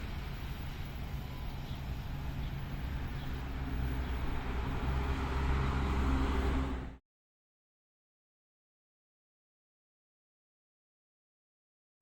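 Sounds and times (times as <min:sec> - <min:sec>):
heavy rain hiss: 0:00.0 - 0:06.9
train rumble: 0:00.0 - 0:07.0.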